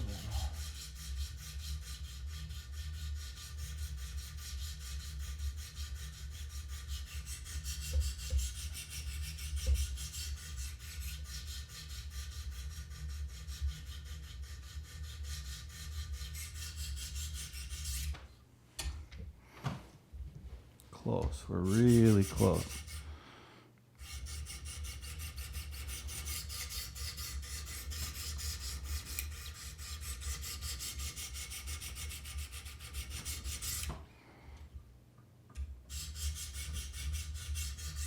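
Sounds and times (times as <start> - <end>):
sharpening stones scraping knife: 21.7 - 23.0, 24.0 - 33.9.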